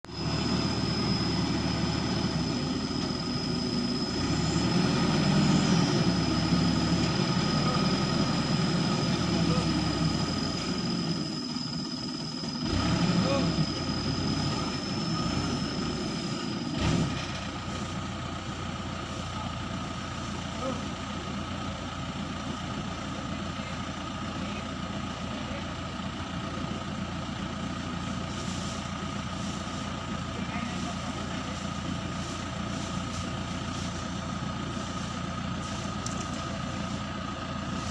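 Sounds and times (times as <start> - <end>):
high whine: 0.0 - 21.3
crane engine running: 0.0 - 37.9.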